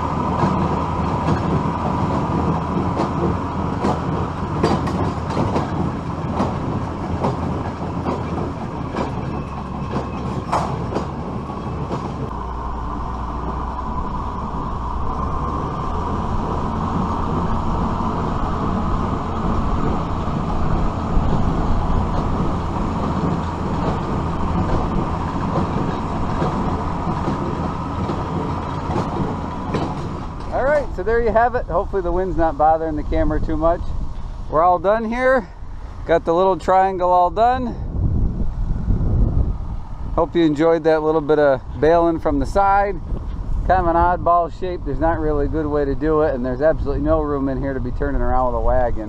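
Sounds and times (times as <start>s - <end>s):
baler clattering and clicking: 0.0s - 12.4s, 13.1s - 33.8s
tractor engine rumble: 0.0s - 49.0s
wind buffeting microphone: 0.0s - 49.0s.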